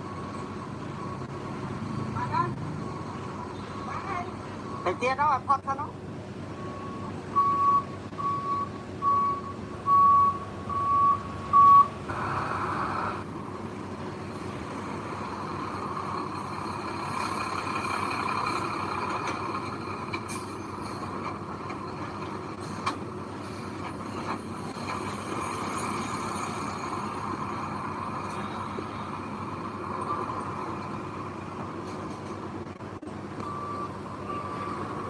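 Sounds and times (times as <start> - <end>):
truck reversing alarm beeping: 0.0 - 5.6, 6.5 - 13.2, 14.7 - 31.6, 33.3 - 35.0
heavy machinery running: 12.0 - 35.0.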